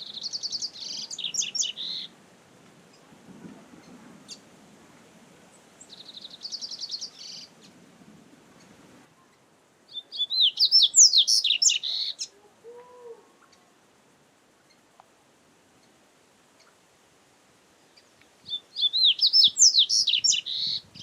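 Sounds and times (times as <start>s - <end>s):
bird trilling and twittering: 0.1s - 2.1s, 9.9s - 12.3s, 18.5s - 21.0s.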